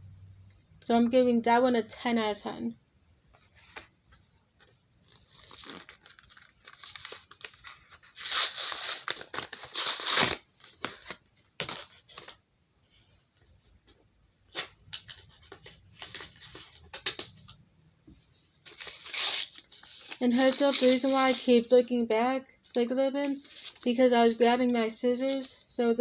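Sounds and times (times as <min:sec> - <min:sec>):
plastic packaging tearing: 0:05.1 - 0:12.2, 0:18.7 - 0:21.5, 0:23.4 - 0:23.9.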